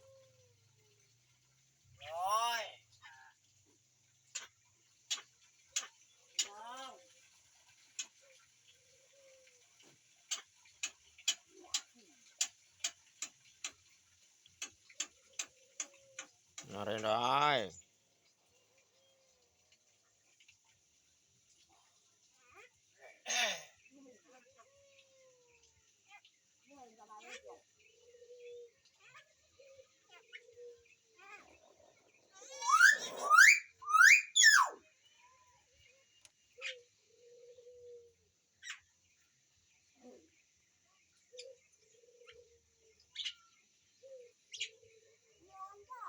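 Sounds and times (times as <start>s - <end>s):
faint soft whistle: 32.6s - 34.7s.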